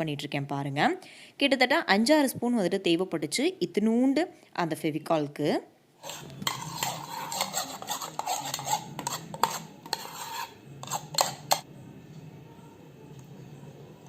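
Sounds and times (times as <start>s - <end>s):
spoon scraping and stirring in bowl: 6.0s - 11.7s.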